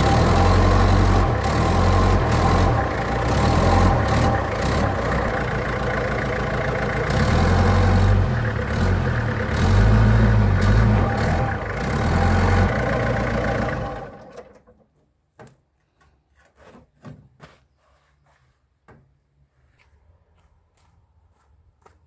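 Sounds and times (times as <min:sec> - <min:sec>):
truck engine running: 0:00.0 - 0:14.5.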